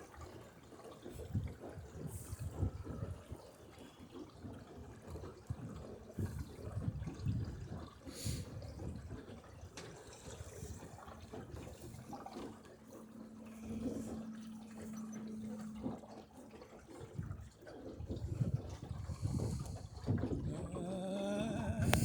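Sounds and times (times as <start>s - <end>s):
water lapping against hull: 0.0s - 22.0s
low hum: 10.4s - 22.0s.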